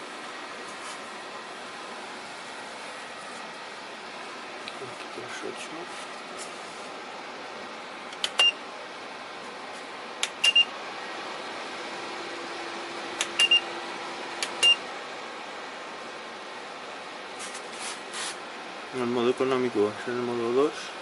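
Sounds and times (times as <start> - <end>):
fan heater blowing: 0.0 - 21.0.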